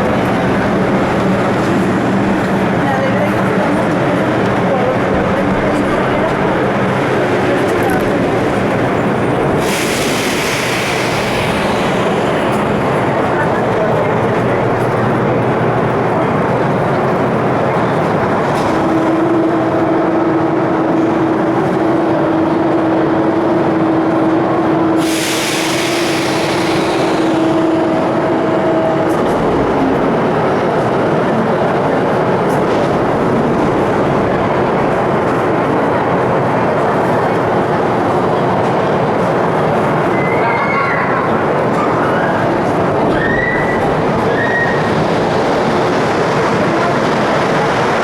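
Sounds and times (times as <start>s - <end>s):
train running rumble: 0.0s - 48.0s
hiss of air: 9.6s - 13.2s, 25.0s - 28.0s.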